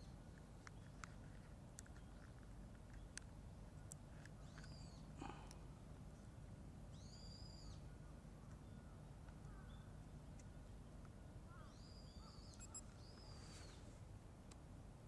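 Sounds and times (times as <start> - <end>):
low steady hum: 0.0 - 15.0
faint high bird call: 6.9 - 7.8, 11.5 - 13.9.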